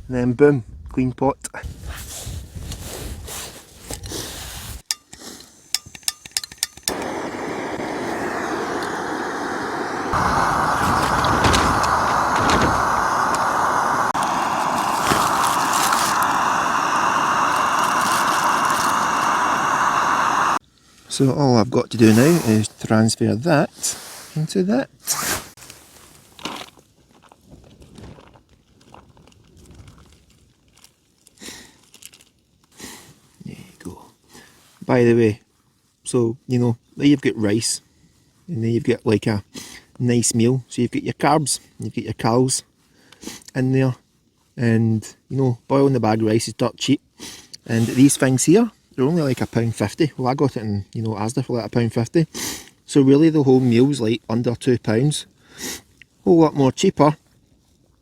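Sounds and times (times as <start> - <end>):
gas stove burner hissing: 6.8 - 20.6
rice tipped into a pouch: 14.2 - 16.5
plastic food pouches crinkling: 26.3 - 32.6.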